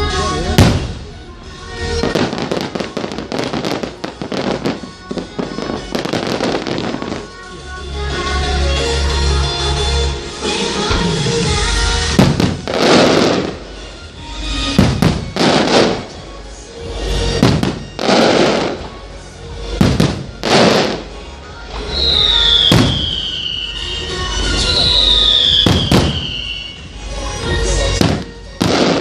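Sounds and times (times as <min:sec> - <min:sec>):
background music: 0:00.0 - 0:29.0
fireworks bangs: 0:00.2 - 0:01.2, 0:01.8 - 0:07.4, 0:10.4 - 0:29.0
hissing crackling firework bursts: 0:10.4 - 0:16.2, 0:16.8 - 0:29.0
firework whistles falling in pitch: 0:21.8 - 0:27.0.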